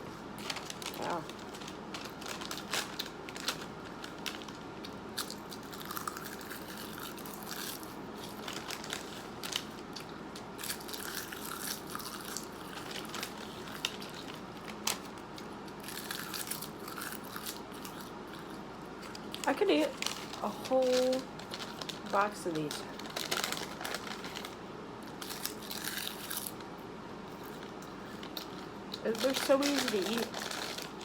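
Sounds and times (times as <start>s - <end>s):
small crunches: 0.4s - 26.7s, 27.4s - 31.0s.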